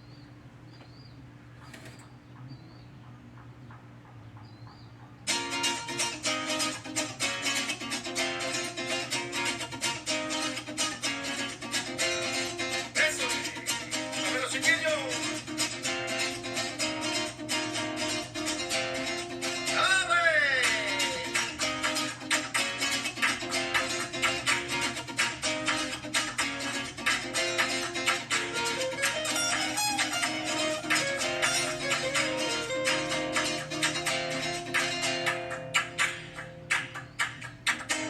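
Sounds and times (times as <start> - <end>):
strummed acoustic guitar: 5.3 - 38.0.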